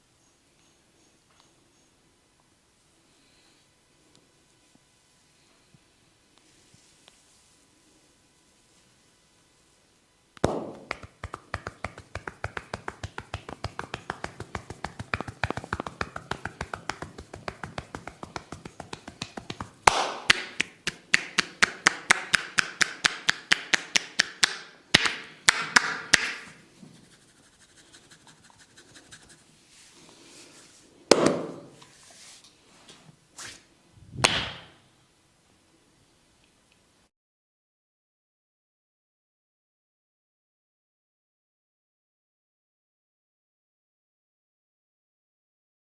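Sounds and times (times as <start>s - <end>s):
hands tapping on a head: 10.4s - 26.4s
hand slaps: 10.4s - 26.6s, 34.2s - 34.8s.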